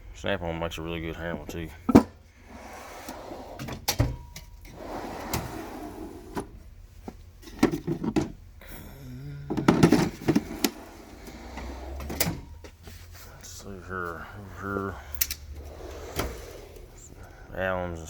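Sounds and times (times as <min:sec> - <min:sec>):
steel drawers sliding: 0:01.9 - 0:08.4, 0:09.6 - 0:12.6, 0:15.1 - 0:17.4.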